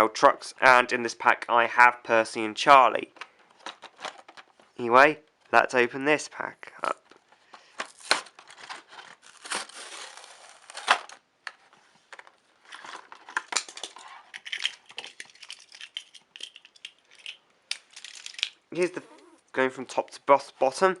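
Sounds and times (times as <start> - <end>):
packaging being torn open: 7.8 - 11.2, 17.7 - 18.6.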